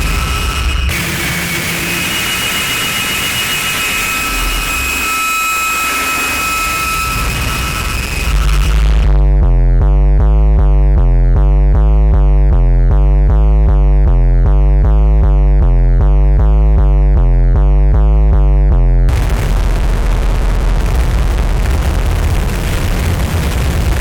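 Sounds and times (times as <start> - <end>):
loud rushing noise: 0.0 - 9.1, 19.1 - 24.0
two-tone electronic buzz siren: 0.0 - 9.4.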